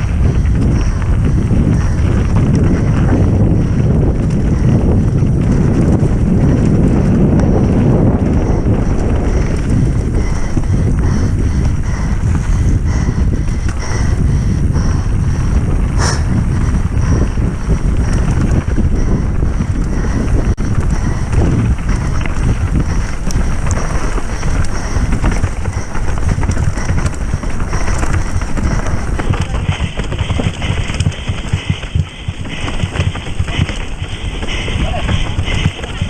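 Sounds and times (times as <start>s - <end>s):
low rumble: 0.0s - 35.8s
wind buffeting microphone: 0.0s - 36.0s
bike clicks and knocks: 17.8s - 36.0s.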